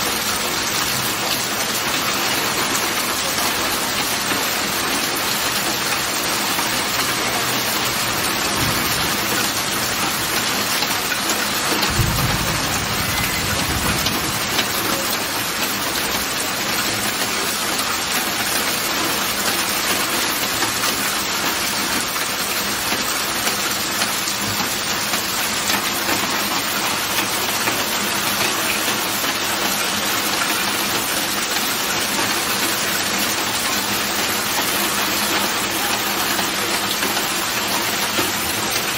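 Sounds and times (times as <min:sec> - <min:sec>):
heavy rain falling: 0:00.0 - 0:38.9
low thunder rumble: 0:08.4 - 0:10.3, 0:11.8 - 0:15.3.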